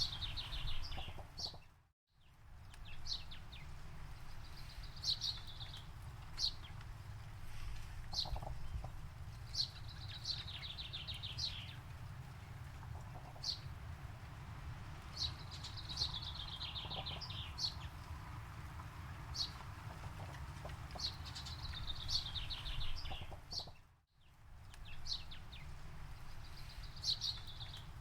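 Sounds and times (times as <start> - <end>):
birds calling: 0.0 - 1.7, 15.0 - 18.1, 18.7 - 23.8.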